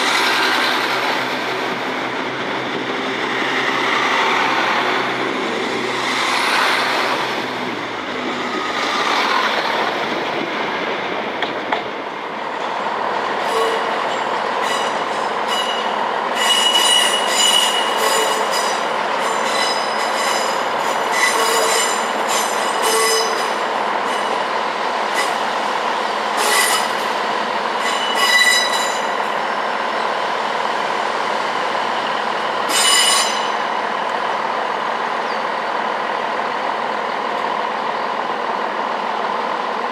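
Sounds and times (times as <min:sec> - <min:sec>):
train wheels squealing on rails: 0:00.0 - 0:10.0, 0:12.6 - 0:38.3
train rumbling: 0:00.0 - 0:39.9.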